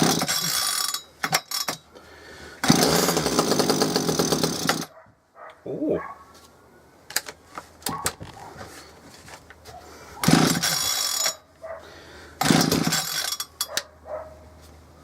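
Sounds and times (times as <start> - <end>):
engine turning over: 0.0 - 1.8, 2.6 - 4.9, 10.2 - 11.4, 12.4 - 13.4
recoil starter pulls: 2.6 - 4.9, 10.2 - 11.4, 12.4 - 13.8.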